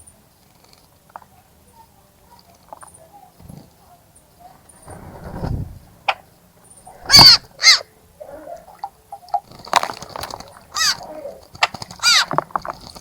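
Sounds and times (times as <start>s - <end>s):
short low rumble: 4.9s - 6.1s
bird calling loudly: 6.9s - 7.8s.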